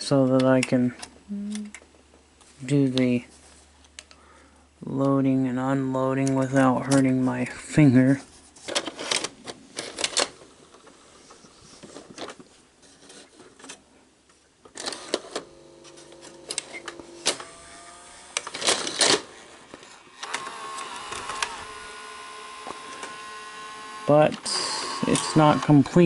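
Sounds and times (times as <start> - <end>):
motor whine: 20.1 - 26.0
steady motor hum: 20.2 - 25.9.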